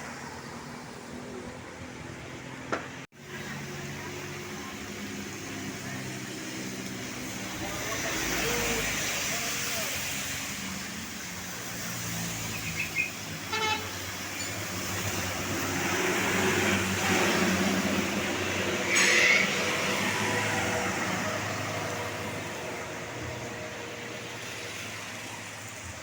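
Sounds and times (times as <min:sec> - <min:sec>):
large vehicle engine hum: 0:00.0 - 0:26.0
road traffic passing: 0:00.0 - 0:26.0
loud horn blast: 0:13.4 - 0:14.1
car horn toot: 0:13.5 - 0:14.0.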